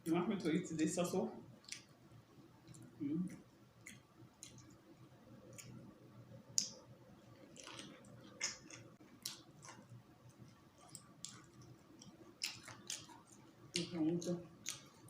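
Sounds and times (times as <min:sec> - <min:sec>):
low steady hum: 0:00.0 - 0:15.0
person chewing with mouth clicks: 0:01.6 - 0:01.9, 0:02.6 - 0:04.8, 0:05.4 - 0:05.8, 0:07.4 - 0:15.0.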